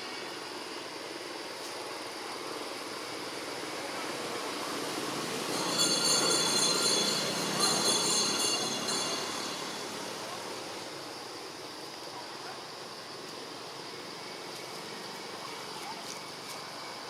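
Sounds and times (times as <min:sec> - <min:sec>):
high steady squeal: 0:02.8 - 0:15.4
vehicle passing: 0:04.6 - 0:10.9.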